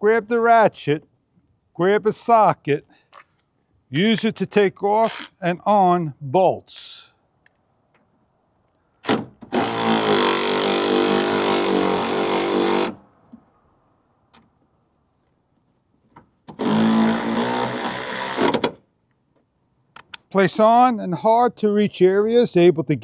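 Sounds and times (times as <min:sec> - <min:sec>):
electric ratchet wrench whine: 0:05.0 - 0:05.4.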